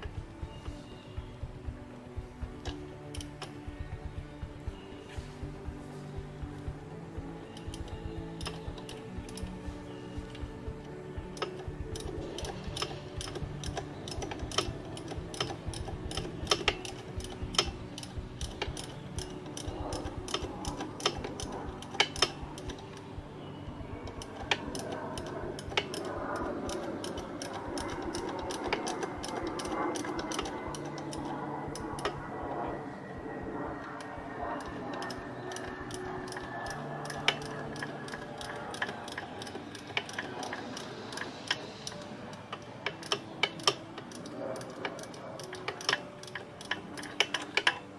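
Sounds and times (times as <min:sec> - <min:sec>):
soft background music: 0:00.0 - 0:47.9
socket ratchet clicking: 0:34.6 - 0:47.8.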